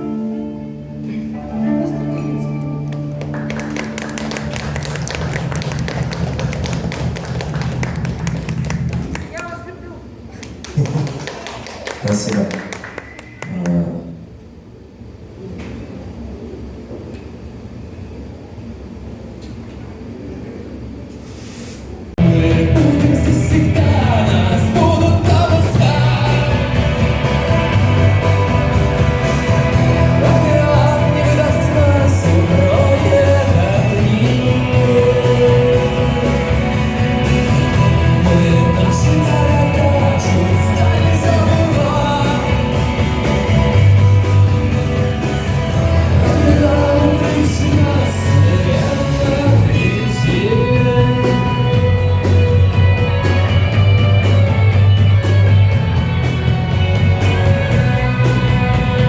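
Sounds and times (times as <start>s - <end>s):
rock-pop song with vocals: 22.2s - 59.0s.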